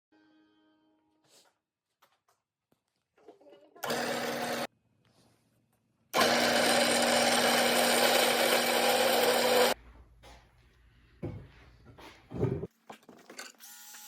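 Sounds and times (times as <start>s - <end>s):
power tool motor running: 3.8s - 4.7s, 6.2s - 9.8s.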